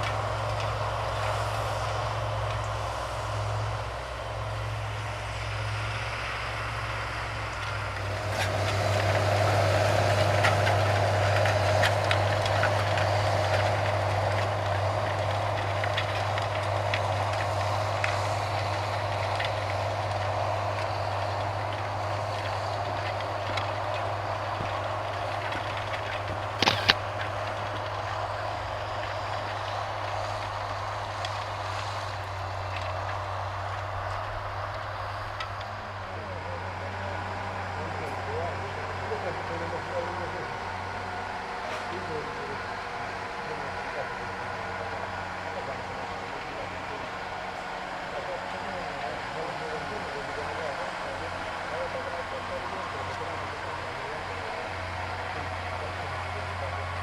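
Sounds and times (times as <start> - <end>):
tractor engine running: 0.0 - 57.0.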